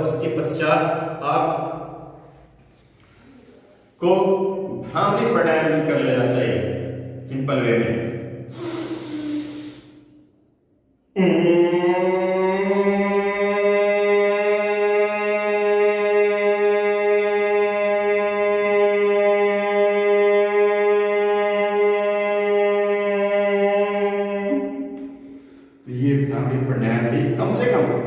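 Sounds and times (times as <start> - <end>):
man humming: 8.5 - 10.2, 11.2 - 25.6.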